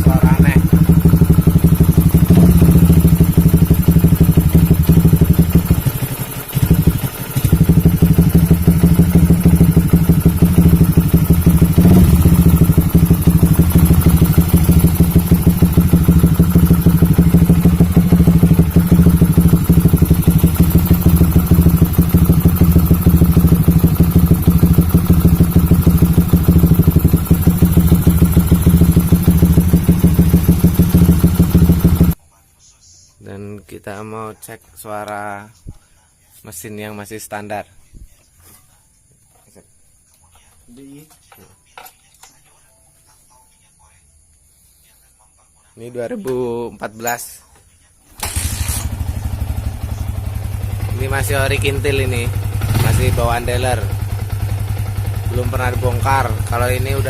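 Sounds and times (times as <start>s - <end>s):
motorcycle engine running: 0.0s - 32.2s, 48.2s - 57.0s.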